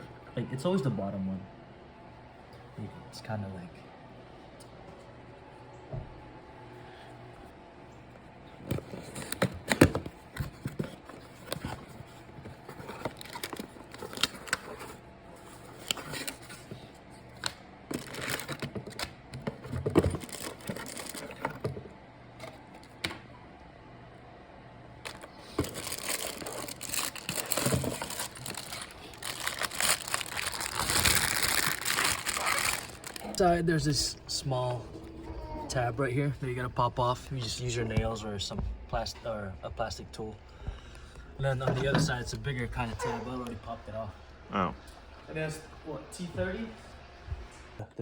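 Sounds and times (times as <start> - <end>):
crinkling rustles: 8.7 - 16.8, 17.9 - 21.7, 25.0 - 34.0.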